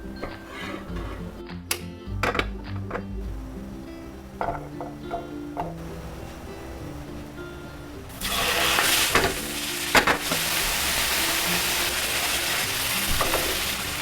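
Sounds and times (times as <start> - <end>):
food sizzling in a pan: 5.3 - 14.0.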